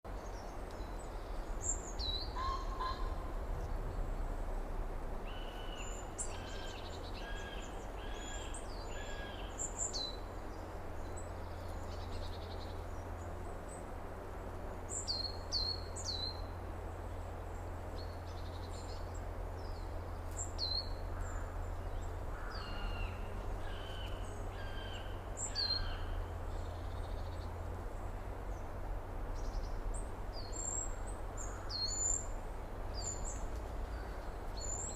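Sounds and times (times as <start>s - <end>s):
steady low rumble: 0.1s - 34.9s
birds chirping: 14.7s - 34.9s.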